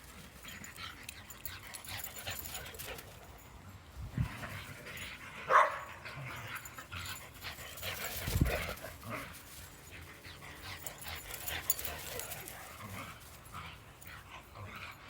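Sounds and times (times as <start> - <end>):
dog barking: 5.5 - 5.9.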